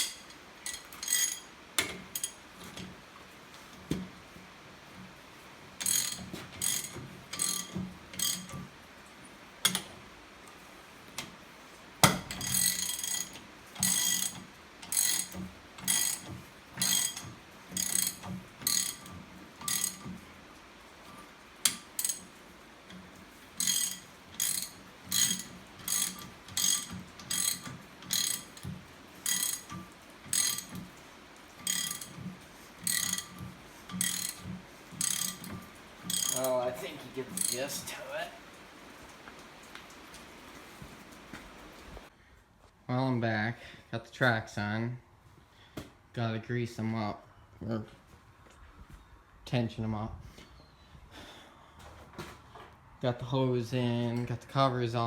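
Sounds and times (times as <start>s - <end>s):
ratchet wrench clicking: 0.0s - 2.4s, 5.8s - 8.6s, 12.1s - 20.2s, 21.6s - 22.3s, 23.6s - 30.9s, 31.6s - 32.2s, 32.8s - 36.6s, 37.3s - 37.9s.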